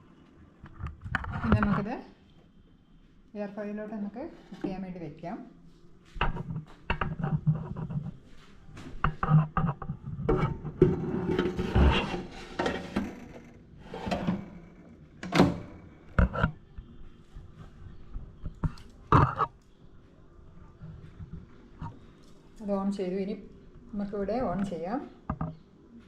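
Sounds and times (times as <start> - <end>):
basket scraping: 10.3 - 14.7.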